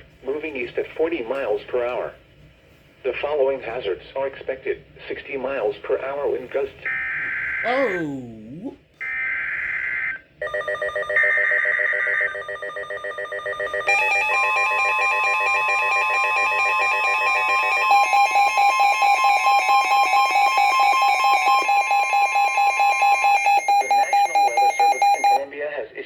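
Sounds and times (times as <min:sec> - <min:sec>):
steady warning alarm tone: 0:09.1 - 0:25.4.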